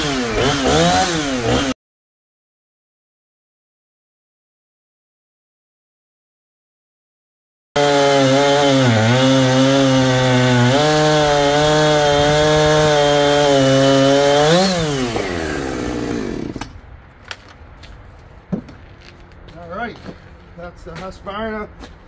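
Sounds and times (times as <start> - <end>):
chainsaw cutting log: 0.0 - 1.8, 7.8 - 16.8.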